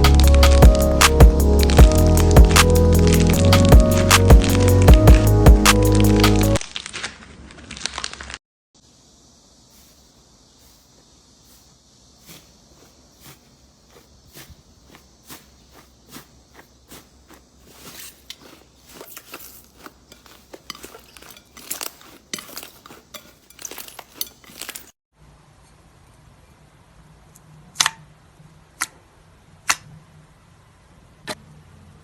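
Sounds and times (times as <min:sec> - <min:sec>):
sharp snaps: 0:00.0 - 0:06.6
slime crackling and popping: 0:00.0 - 0:08.4.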